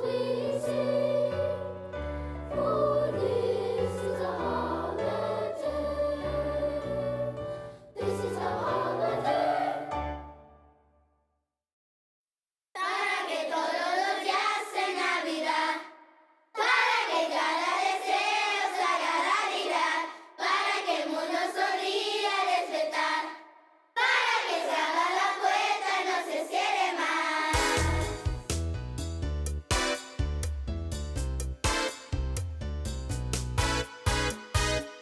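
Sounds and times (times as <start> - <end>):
children's choir singing: 0.0 - 10.2, 12.8 - 16.0, 16.6 - 28.3.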